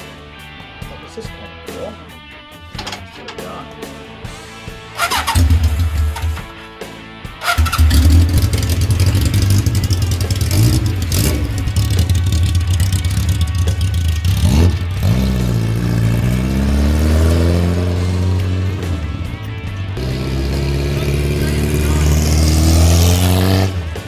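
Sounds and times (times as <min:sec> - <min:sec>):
motorcycle engine revving: 0:04.9 - 0:06.6, 0:07.4 - 0:24.0.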